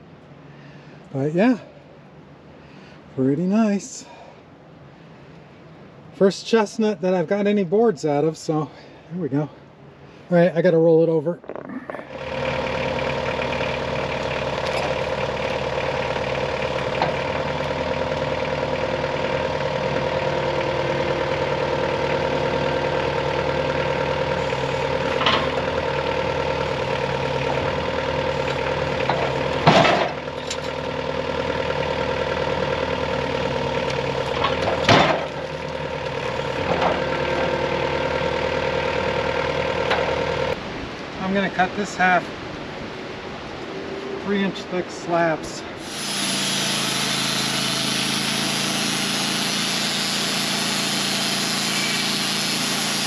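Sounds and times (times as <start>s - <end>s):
sawmill engine running: 12.1s - 40.6s, 43.3s - 53.0s.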